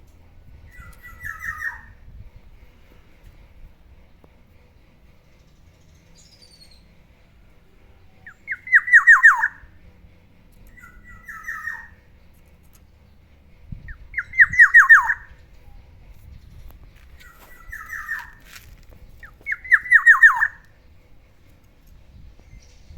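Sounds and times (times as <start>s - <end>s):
bird calling with descending notes: 0.7s - 2.0s, 7.9s - 9.7s, 10.7s - 12.0s, 13.9s - 15.8s, 17.2s - 20.7s.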